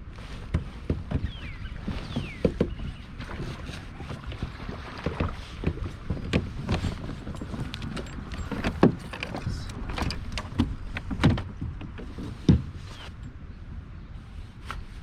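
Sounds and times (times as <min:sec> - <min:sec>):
wind buffeting microphone: 0:00.0 - 0:15.0
knocks and thumps on kayak: 0:00.1 - 0:13.2.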